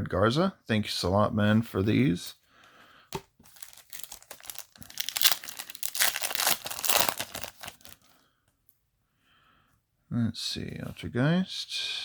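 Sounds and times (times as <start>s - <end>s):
foil wrapper tearing and crinkling: 3.5s - 8.1s.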